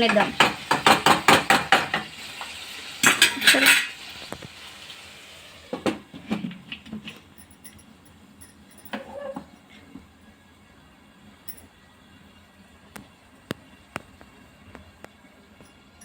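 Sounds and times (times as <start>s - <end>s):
metal spoon scraping a pan: 2.5s - 4.1s.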